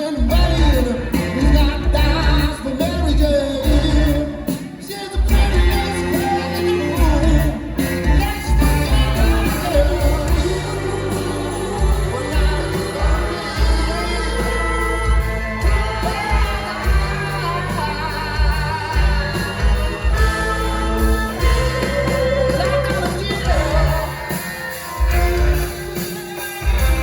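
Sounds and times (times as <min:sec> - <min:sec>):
lead singer singing: 0:00.0 - 0:26.8
rock and blues band playing: 0:00.0 - 0:27.0
heavy bass notes pulsing: 0:05.3 - 0:24.2.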